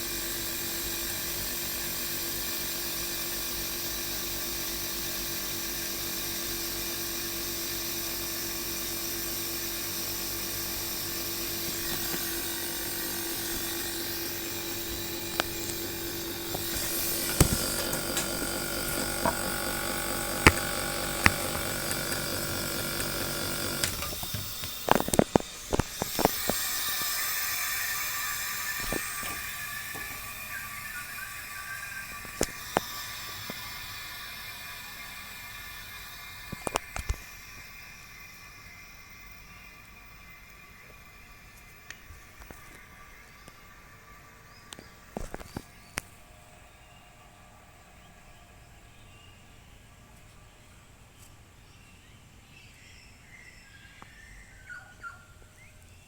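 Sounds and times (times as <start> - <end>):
compressor humming: 0.0 - 46.6
sharp clicks and knocks: 11.4 - 30.8, 32.0 - 34.1, 36.4 - 37.3.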